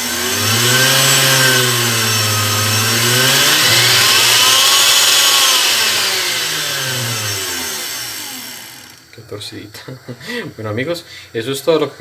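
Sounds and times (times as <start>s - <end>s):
blender motor running: 0.0s - 9.2s.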